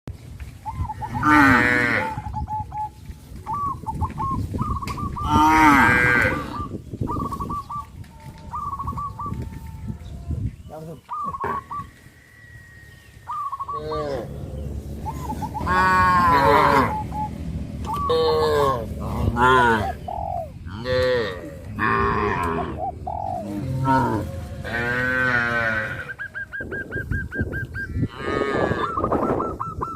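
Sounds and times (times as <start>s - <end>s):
cattle mooing: 1.2s - 2.2s, 5.2s - 6.7s, 15.6s - 17.0s, 18.1s - 20.0s, 20.7s - 22.8s, 23.4s - 26.2s, 28.0s - 29.0s.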